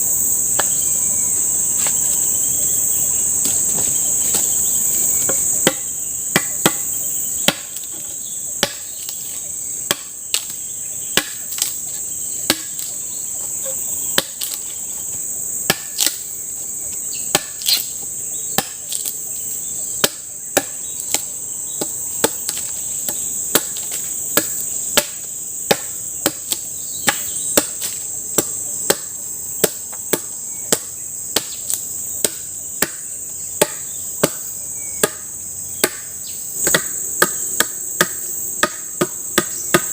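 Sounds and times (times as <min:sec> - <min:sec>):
insects droning: 0:00.0 - 0:39.9
tool striking wood: 0:05.2 - 0:09.0, 0:09.9 - 0:10.5, 0:11.1 - 0:11.7, 0:12.5 - 0:12.9, 0:15.7 - 0:16.2, 0:20.0 - 0:33.0, 0:35.0 - 0:39.9.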